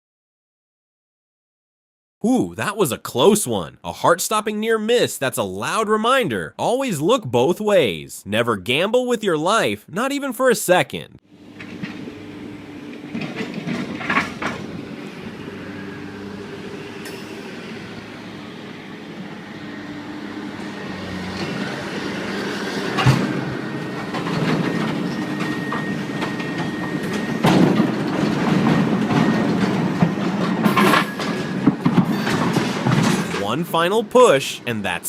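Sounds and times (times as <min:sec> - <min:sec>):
train rumbling on tracks: 0:11.3 - 0:33.4.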